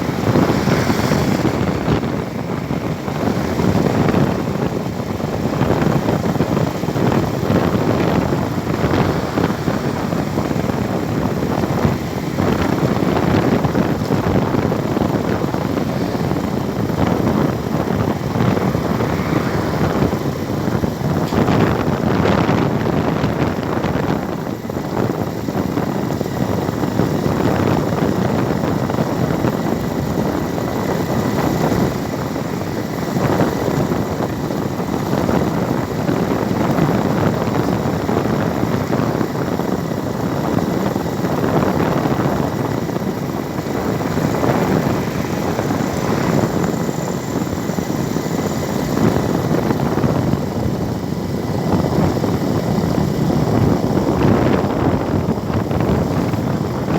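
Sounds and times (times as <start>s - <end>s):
vehicle rumbling on road: 0.0s - 56.9s.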